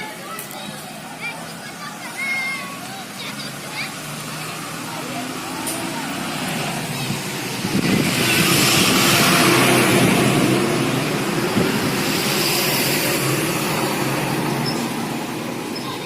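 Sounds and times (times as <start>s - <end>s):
motor vehicle passing: 0.0s - 16.0s.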